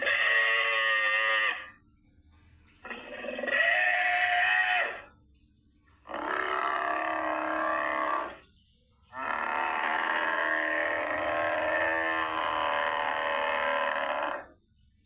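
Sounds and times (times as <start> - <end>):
creature roar-like calls: 0.0 - 1.7, 2.8 - 5.1, 6.1 - 8.4, 9.2 - 14.6.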